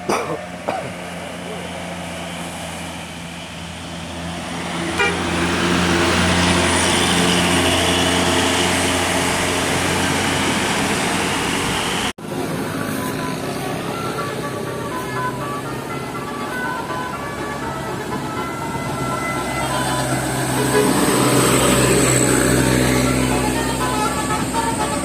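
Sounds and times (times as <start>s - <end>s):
bus engine under load: 0.0s - 25.0s
bus horn tune: 4.5s - 12.1s, 12.8s - 25.0s.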